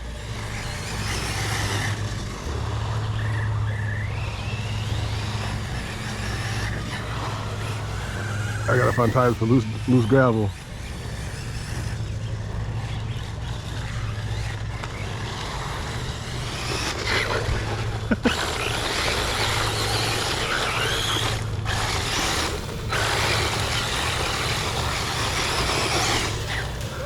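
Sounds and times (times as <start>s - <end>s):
electric motor whining: 0.0s - 27.0s
tyres on gravel: 0.0s - 27.0s.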